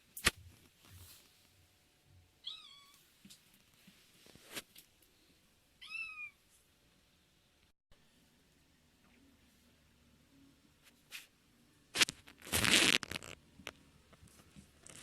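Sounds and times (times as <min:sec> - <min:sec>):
cat meowing: 0:02.4 - 0:03.0, 0:05.8 - 0:06.4.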